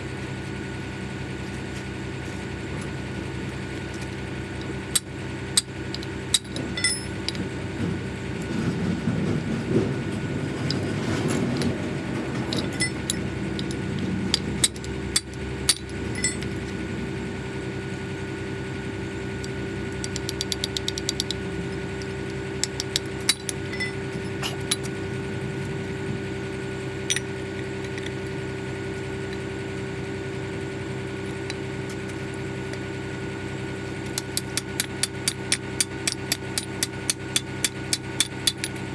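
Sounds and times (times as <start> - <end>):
engine idling: 0.0 - 38.9
metallic tool clinks and knocks: 5.9 - 7.4, 12.4 - 16.6, 22.0 - 24.9, 27.0 - 28.1.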